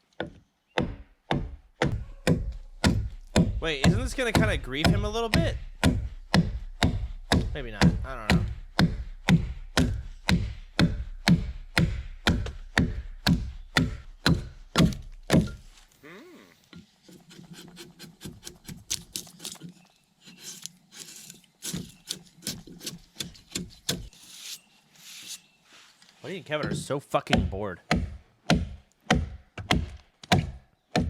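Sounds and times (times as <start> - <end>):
tool striking wood: 0.2 - 15.7, 21.7 - 24.1.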